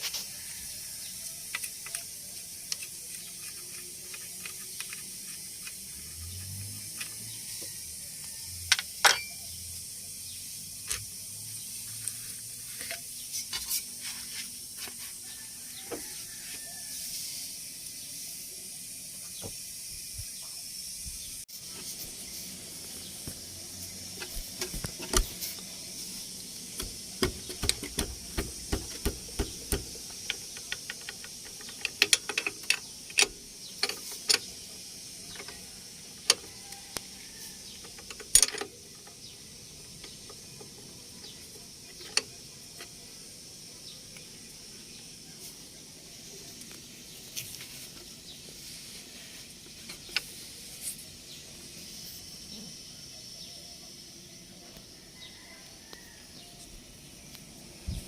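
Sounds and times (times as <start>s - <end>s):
steady hiss: 0.0s - 58.0s
ratchet clicking: 1.4s - 7.8s, 26.3s - 39.3s
metal tool clicks and taps: 26.8s - 34.5s.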